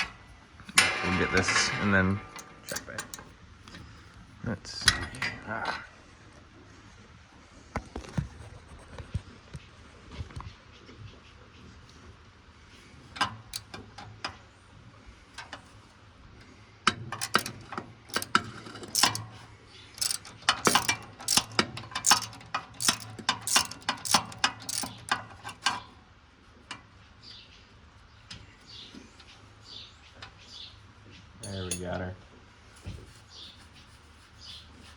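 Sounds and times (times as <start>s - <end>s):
ratchet wrench clicking: 2.3s - 3.3s, 13.2s - 13.8s, 17.2s - 19.4s, 20.0s - 25.8s.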